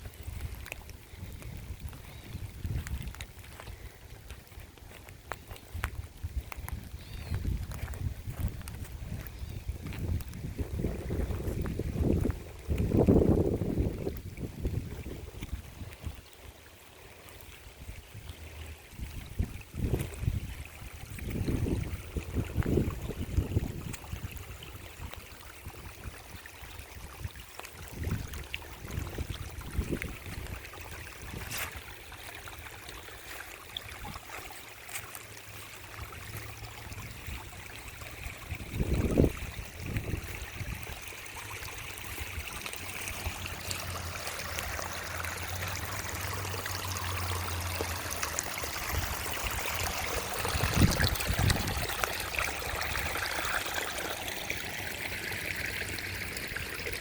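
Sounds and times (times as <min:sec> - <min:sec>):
creek water trickling and splashing: 0:00.0 - 0:57.0.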